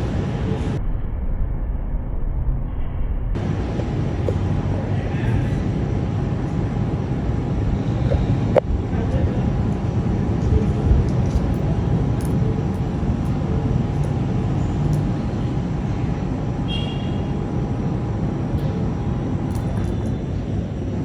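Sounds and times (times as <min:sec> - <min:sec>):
thunderstorm rumble: 0:00.0 - 0:16.7.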